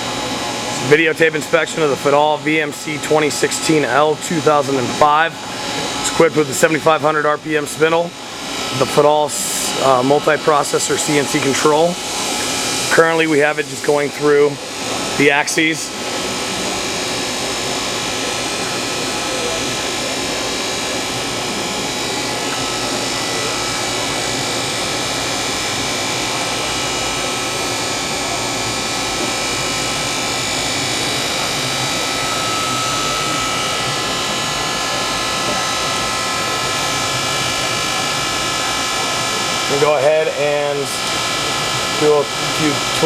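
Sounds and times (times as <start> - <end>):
high steady whining tones: 0.0 - 43.0
machining centre mechanical whir: 0.0 - 43.0.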